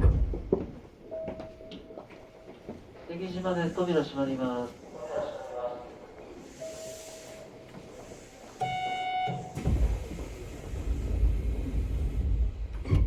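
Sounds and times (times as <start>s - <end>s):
train doors sliding shut: 6.4s - 13.0s.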